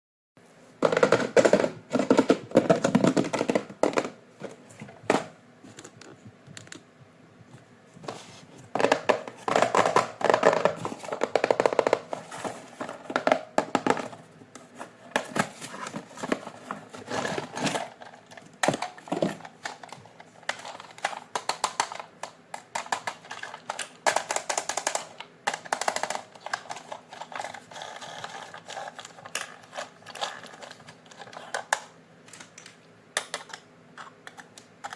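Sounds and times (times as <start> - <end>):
packaging clicks and taps: 18.6 - 34.9
packaging rustling: 25.7 - 32.7.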